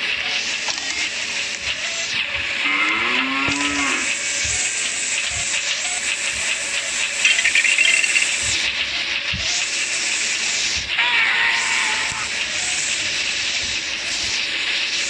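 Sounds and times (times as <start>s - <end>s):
steady loud hiss: 3.5s - 15.0s.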